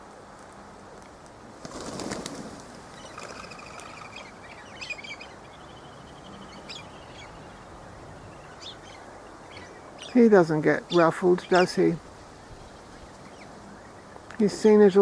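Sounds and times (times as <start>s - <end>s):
wings flapping: 1.0s - 4.3s
bird chirps and trills: 2.9s - 15.0s.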